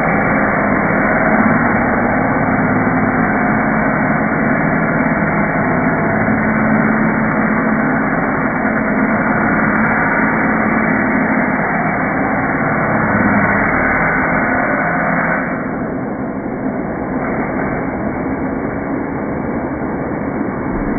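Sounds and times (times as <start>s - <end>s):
machine humming: 20.6s - 20.9s.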